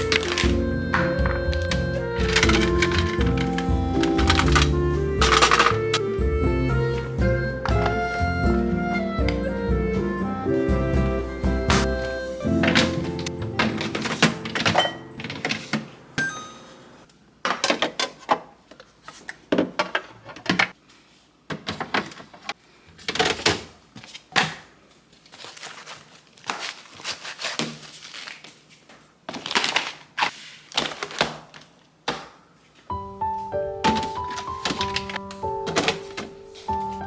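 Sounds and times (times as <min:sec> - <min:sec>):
kitchen items clattering: 0:00.0 - 0:06.2, 0:11.7 - 0:20.8, 0:21.5 - 0:24.7, 0:33.4 - 0:37.0.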